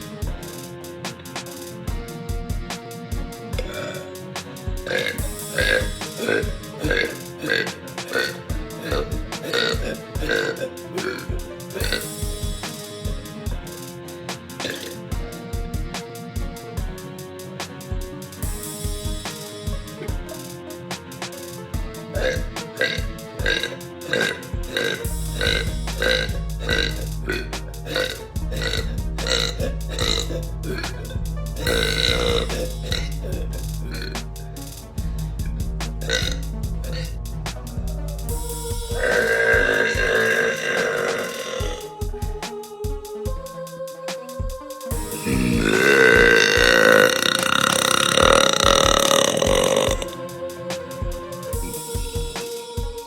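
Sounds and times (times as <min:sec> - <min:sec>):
music: 0:00.0 - 0:53.0
low steady bass: 0:25.0 - 0:40.3
girl burping: 0:39.0 - 0:41.8, 0:45.2 - 0:50.1.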